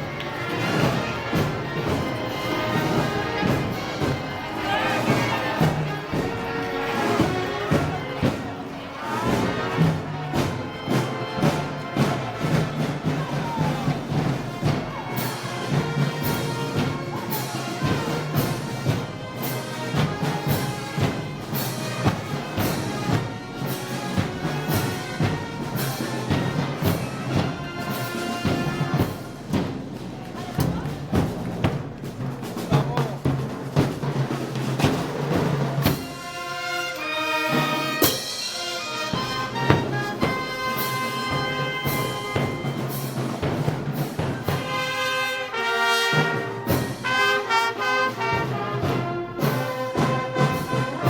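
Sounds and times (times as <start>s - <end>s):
heavy drum beat: 0.0s - 51.0s
live band playing: 0.0s - 51.0s
drum hits: 37.9s - 45.1s.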